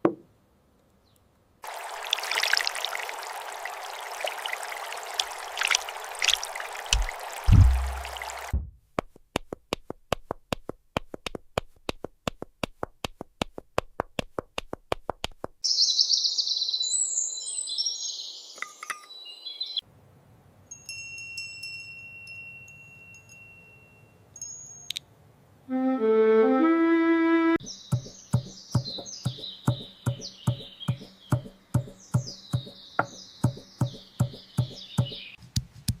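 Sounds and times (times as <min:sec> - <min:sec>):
birds chirping: 0:01.0 - 0:08.5, 0:15.6 - 0:19.8, 0:27.6 - 0:35.4
sharp even knocks: 0:06.9 - 0:08.8, 0:27.9 - 0:35.2
musical notes: 0:25.7 - 0:27.6
high chirping: 0:27.6 - 0:35.4.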